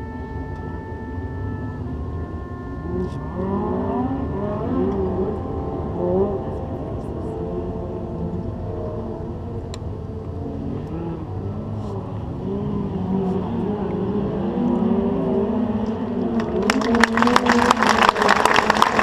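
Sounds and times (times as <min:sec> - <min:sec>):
long wavering held notes: 0:00.0 - 0:19.0
people clapping: 0:16.3 - 0:19.0.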